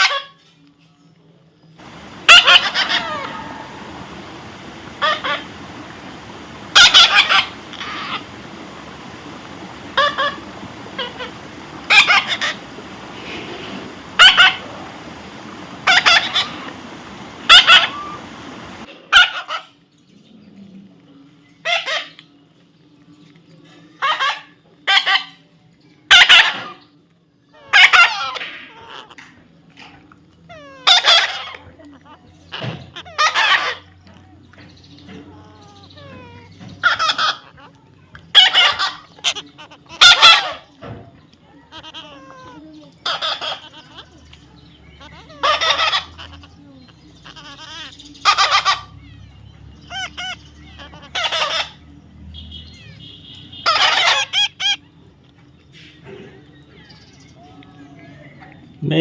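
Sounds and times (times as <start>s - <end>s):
parrot squawking: 1.8s - 19.7s, 24.0s - 25.4s, 26.1s - 26.8s, 27.6s - 29.2s, 30.5s - 33.9s, 35.1s - 40.7s, 41.5s - 51.9s, 52.5s - 54.8s.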